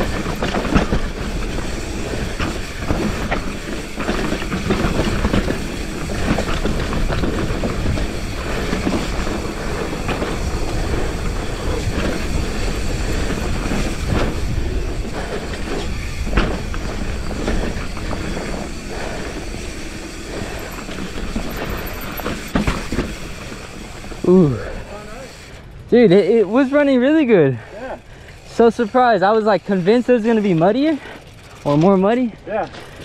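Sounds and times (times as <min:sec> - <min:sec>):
wind rushing over microphone: 0:00.0 - 0:23.2
bike rattling over bumps: 0:00.0 - 0:33.0
tyres rolling over dirt: 0:00.0 - 0:33.0.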